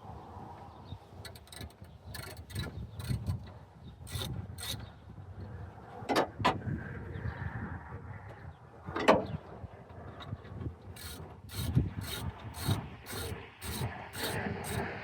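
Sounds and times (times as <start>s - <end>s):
metallic clicks and rasps of tools: 1.3s - 3.4s, 4.1s - 4.9s, 11.0s - 15.0s.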